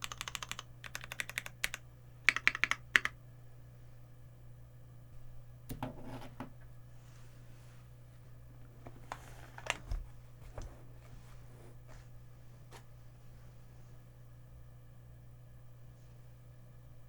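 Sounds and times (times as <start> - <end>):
soft keyboard clicks: 0.0 - 3.2
low steady hum: 0.0 - 17.0
keyboard handling rustle: 8.6 - 12.9.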